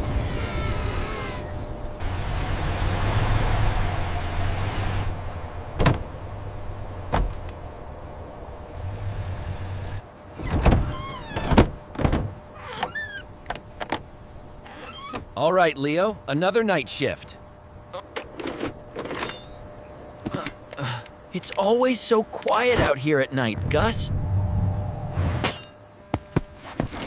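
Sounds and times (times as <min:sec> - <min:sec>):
short falling squeaks: 0:10.4 - 0:11.6, 0:12.6 - 0:13.3, 0:14.6 - 0:15.2.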